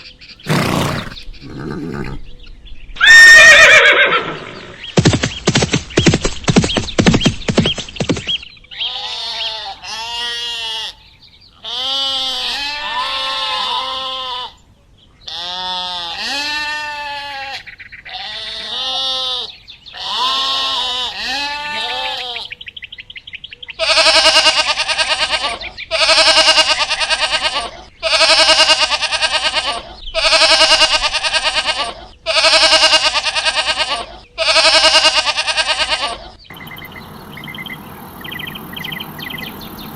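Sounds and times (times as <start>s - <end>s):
livestock bleating: 8.8s - 11.0s, 11.6s - 14.6s, 15.3s - 22.6s, 23.8s - 39.9s.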